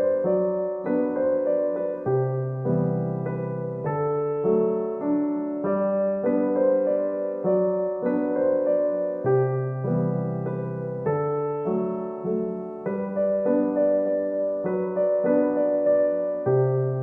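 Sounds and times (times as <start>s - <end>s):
gentle electric piano melody: 0.0s - 17.0s.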